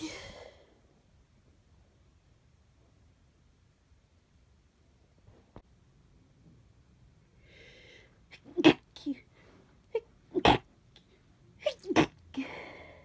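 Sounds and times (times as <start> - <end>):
person sneezing: 0.0 - 0.6, 10.4 - 10.6
breathy inhale: 7.4 - 8.2, 12.4 - 13.0.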